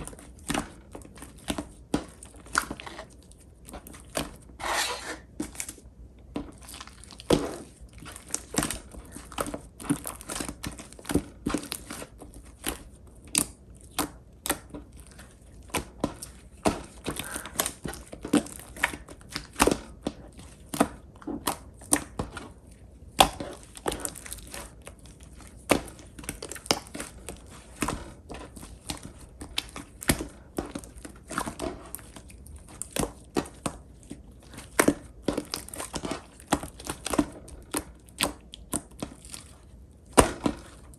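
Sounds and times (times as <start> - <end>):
slime squished by hand: 0.0 - 40.9.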